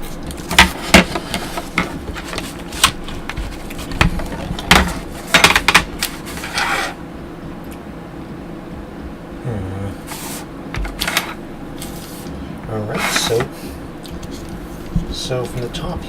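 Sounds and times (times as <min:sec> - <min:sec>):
sharp clicks and knocks: 0:00.2 - 0:06.2.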